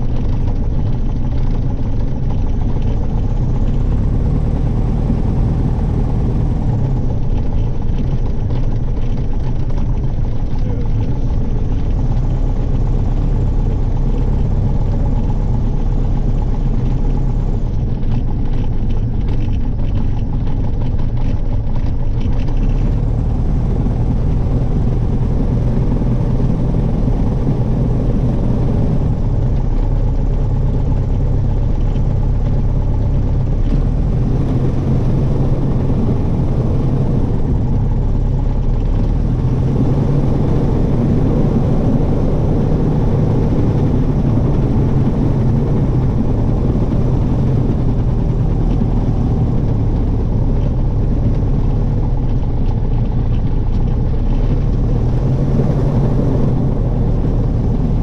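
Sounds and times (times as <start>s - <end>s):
airplane piston engine running: 23.5s - 58.0s.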